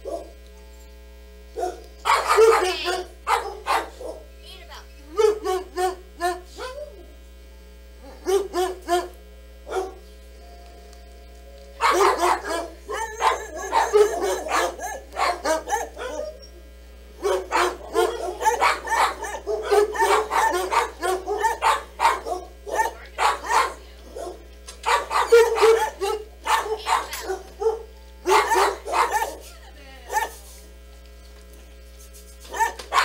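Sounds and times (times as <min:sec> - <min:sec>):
dog barking: 0:00.0 - 0:00.4, 0:01.6 - 0:04.3, 0:05.2 - 0:07.0, 0:08.0 - 0:09.1, 0:09.7 - 0:10.0, 0:11.8 - 0:16.4, 0:17.2 - 0:30.5, 0:32.5 - 0:33.0.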